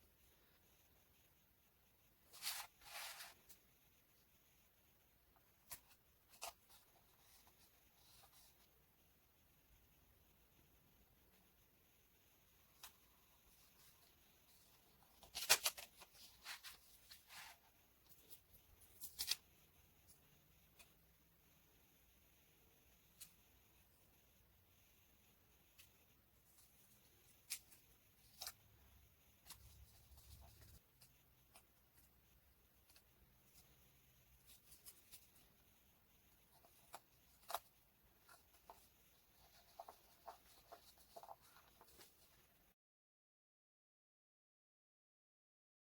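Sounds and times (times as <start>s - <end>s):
paper rustling: 2.2s - 3.6s, 12.8s - 19.5s, 25.8s - 28.6s, 34.4s - 35.5s, 36.4s - 42.4s.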